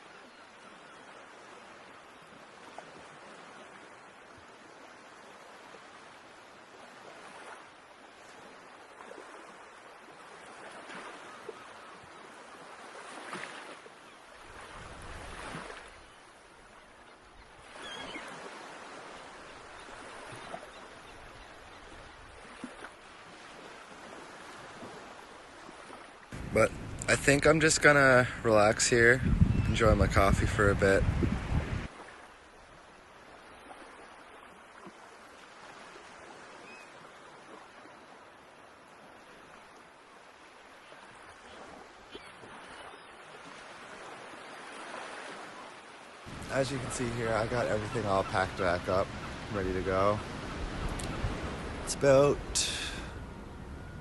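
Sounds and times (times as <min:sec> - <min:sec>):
ocean surf washing ashore: 0:00.0 - 0:54.0
wind rumble on microphone: 0:26.3 - 0:31.9, 0:50.2 - 0:54.0.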